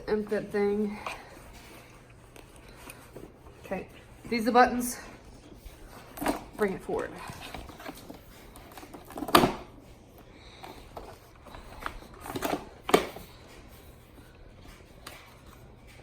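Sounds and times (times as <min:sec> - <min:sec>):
plastic parts clicking and knocking: 0:07.3 - 0:09.8, 0:10.6 - 0:13.7.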